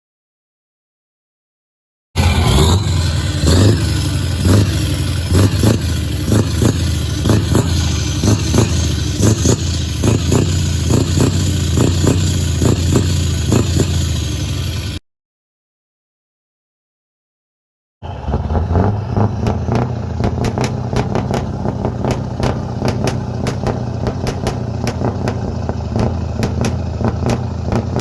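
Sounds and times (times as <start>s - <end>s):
short sharp pulses: 2.2s - 10.4s
diesel truck engine running: 2.2s - 15.0s, 18.0s - 28.0s.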